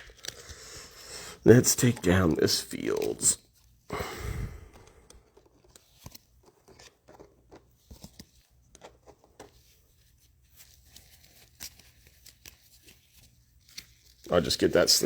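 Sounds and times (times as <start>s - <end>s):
trading cards being handled: 0.0s - 3.8s, 4.5s - 15.0s.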